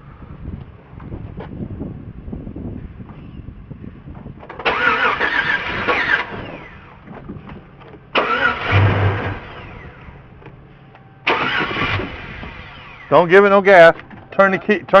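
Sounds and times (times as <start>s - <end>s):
engine cranking on starter: 4.5s - 7.0s, 8.1s - 10.2s, 11.2s - 13.2s.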